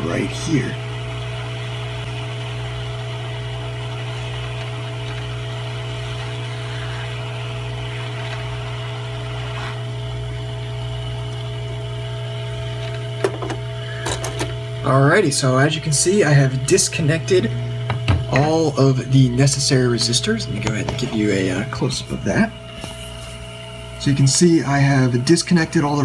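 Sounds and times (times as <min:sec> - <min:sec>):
hot air station blowing: 0:00.0 - 0:26.0.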